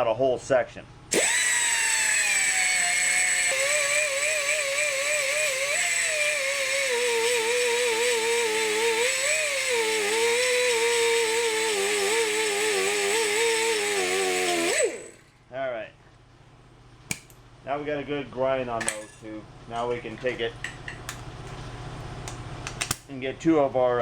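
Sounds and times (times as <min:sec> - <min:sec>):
die grinder motor whine: 0:01.1 - 0:15.4.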